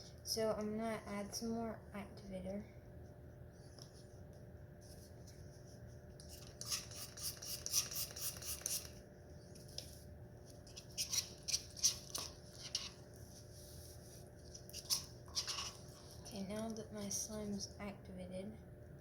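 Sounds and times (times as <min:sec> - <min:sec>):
slime being stirred: 0:03.7 - 0:16.8.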